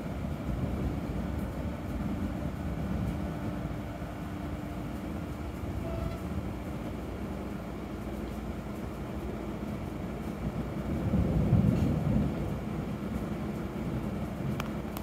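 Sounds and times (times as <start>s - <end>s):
distant thunder rumbling: 0.0s - 7.4s, 9.8s - 15.0s.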